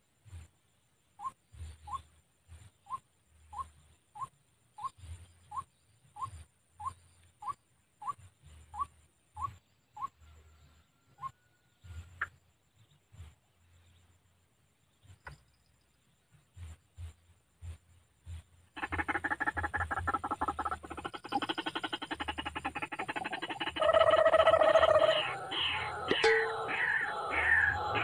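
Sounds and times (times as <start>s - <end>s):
low muffled thuds: 16.5s - 18.6s
waterhen calling: 18.8s - 28.0s.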